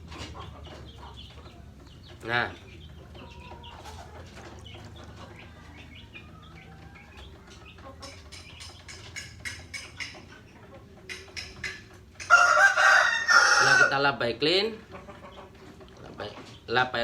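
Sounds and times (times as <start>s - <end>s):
faint birds chirping: 0.0s - 17.0s.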